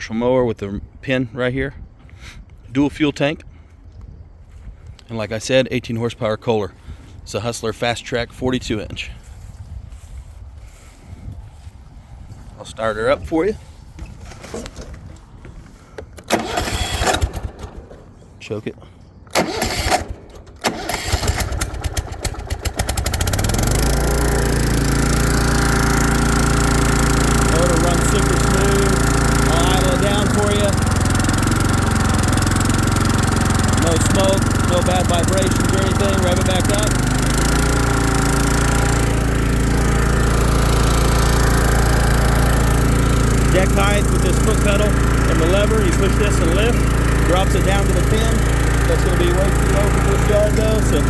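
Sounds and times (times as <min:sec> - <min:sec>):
mower engine cranking: 0:14.0 - 0:18.4, 0:19.3 - 0:51.0
mower engine running: 0:15.7 - 0:18.3, 0:19.3 - 0:51.0.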